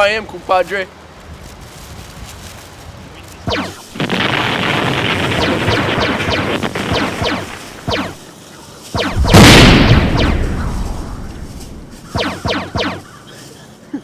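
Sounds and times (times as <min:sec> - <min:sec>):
loud explosion: 0:03.5 - 0:08.2, 0:09.0 - 0:13.0
laser blast zaps: 0:03.5 - 0:08.3, 0:09.0 - 0:13.2.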